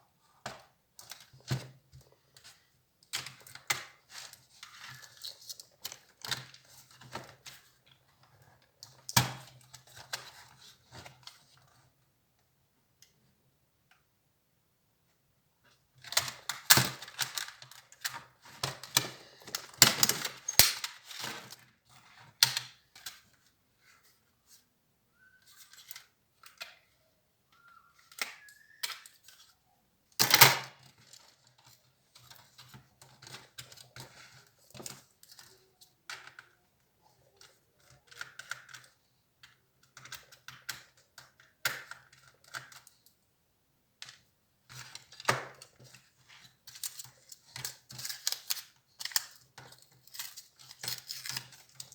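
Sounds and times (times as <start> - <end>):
plastic parts clicking and rattling: 16.0 - 21.7, 44.7 - 51.9.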